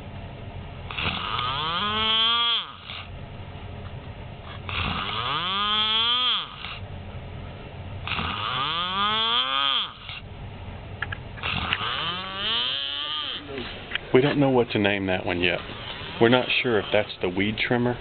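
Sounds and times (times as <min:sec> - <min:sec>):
loud snoring: 0:00.9 - 0:03.1, 0:04.6 - 0:06.8, 0:08.0 - 0:10.2, 0:11.4 - 0:13.6.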